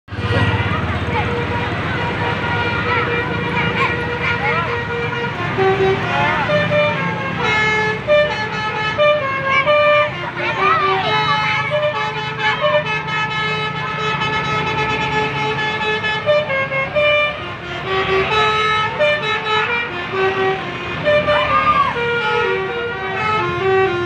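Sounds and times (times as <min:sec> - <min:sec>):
multi-tone bus horn playing a tune: 0:00.1 - 0:24.0.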